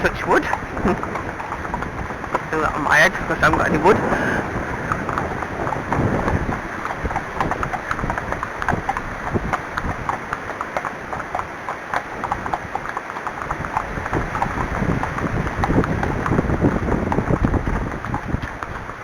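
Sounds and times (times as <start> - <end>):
horse hooves clopping: 0.0 - 19.0
wind buffeting microphone: 0.0 - 19.0.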